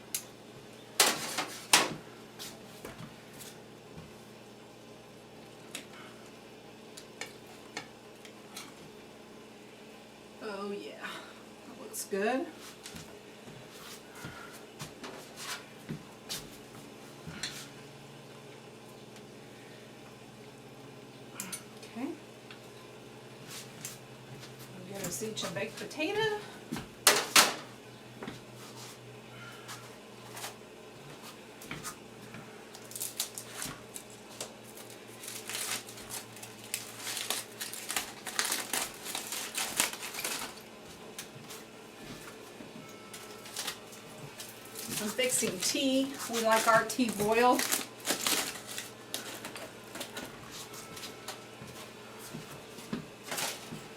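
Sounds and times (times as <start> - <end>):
faint steady hum: 0.0 - 53.9
potatoes being handled and served: 43.2 - 51.1.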